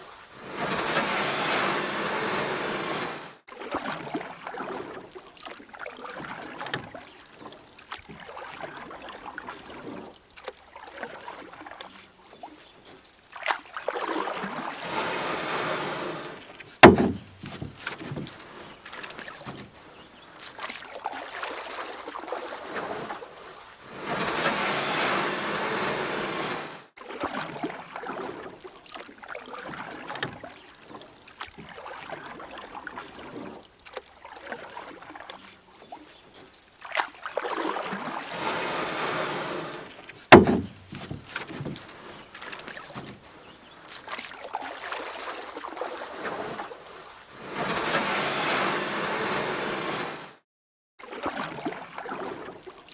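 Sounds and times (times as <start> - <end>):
paddle strokes splashing water: 0.0 - 50.4, 51.0 - 52.9
sharp knock: 16.8 - 17.7, 40.4 - 41.2.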